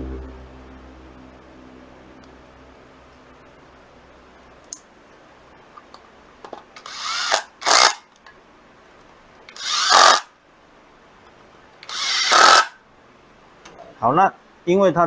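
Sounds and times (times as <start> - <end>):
cordless power driver whirring: 9.5 - 10.2, 11.8 - 12.7.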